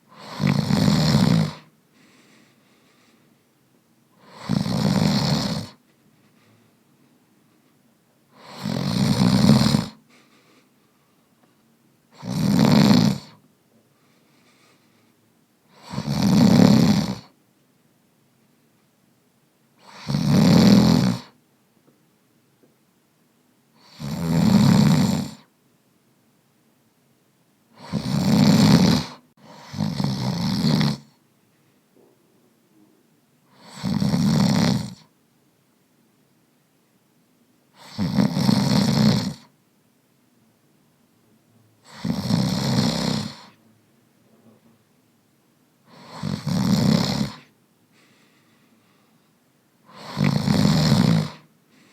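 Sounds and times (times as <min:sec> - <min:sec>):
loud snoring: 0:00.1 - 0:01.7, 0:04.2 - 0:05.8, 0:08.3 - 0:10.0, 0:12.1 - 0:13.4, 0:15.7 - 0:17.4, 0:19.8 - 0:21.4, 0:23.8 - 0:25.5, 0:27.8 - 0:31.2, 0:33.5 - 0:35.1, 0:37.7 - 0:39.5, 0:41.8 - 0:43.6, 0:45.9 - 0:47.5, 0:49.8 - 0:51.5.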